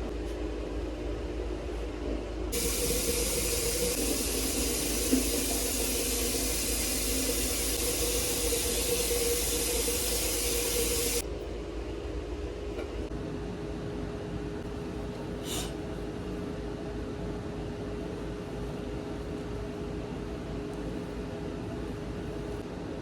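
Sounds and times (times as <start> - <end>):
low hum with steady tones: 0.0 - 23.0
steady hiss: 2.6 - 11.2.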